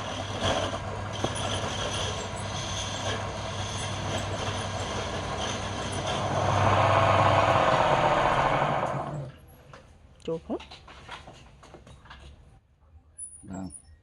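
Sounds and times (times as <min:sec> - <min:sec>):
grinding rush: 0:00.0 - 0:09.3
woodworking machine motor hum: 0:02.4 - 0:09.3.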